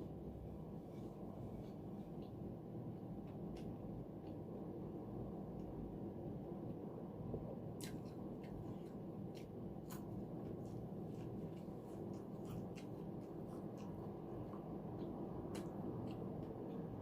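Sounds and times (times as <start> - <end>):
steady low background hum: 0.0 - 17.0
person chewing: 7.7 - 17.0.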